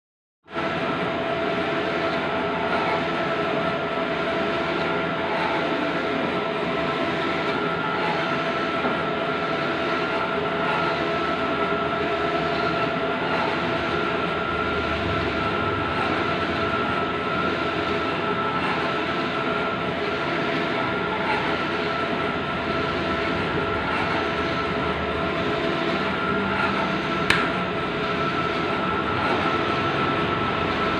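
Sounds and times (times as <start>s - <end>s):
printer mechanical hum: 0.5s - 30.9s
sharp click: 27.3s - 27.6s.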